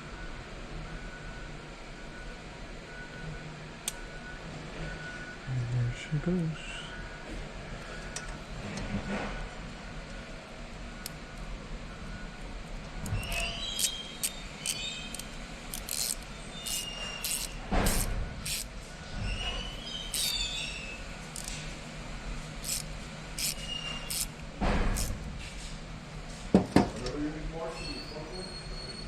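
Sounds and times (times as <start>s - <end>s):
steady low hum: 0.0s - 27.7s
metal tools clicking and clinking: 13.0s - 18.7s, 20.1s - 20.4s, 21.3s - 21.6s, 22.6s - 24.4s.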